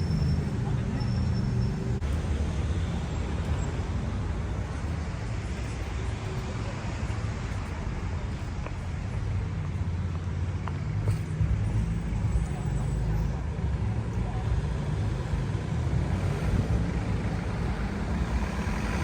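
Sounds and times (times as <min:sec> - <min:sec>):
cars passing on street: 0:00.0 - 0:19.0.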